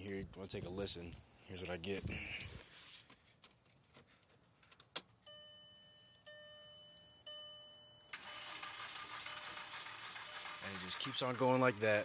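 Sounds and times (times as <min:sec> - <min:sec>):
dashboard warning chime dinging: 0:05.2 - 0:09.7
car starter whirring: 0:08.1 - 0:12.0.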